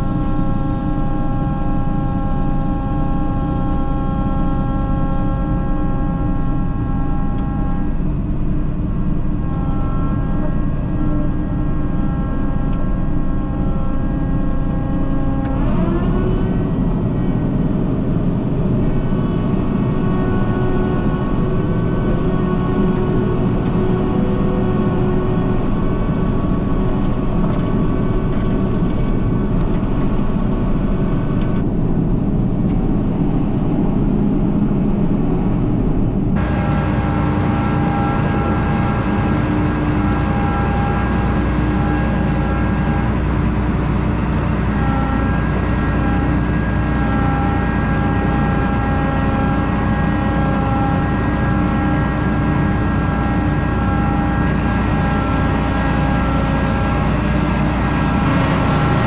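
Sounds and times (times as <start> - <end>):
combine harvester rumbling: 0.0 - 59.0
whining drive tones: 0.0 - 59.0.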